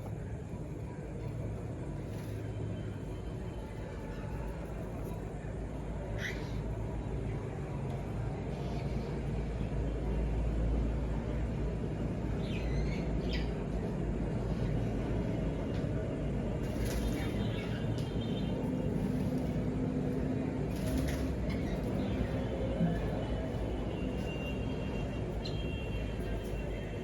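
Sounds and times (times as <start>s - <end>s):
cockatiels chirping: 6.2s - 6.6s, 16.7s - 19.6s, 20.7s - 22.4s.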